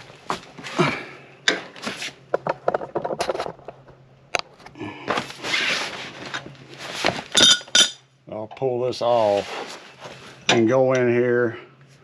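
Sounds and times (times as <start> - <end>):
metal plates clinking: 7.3 - 8.0.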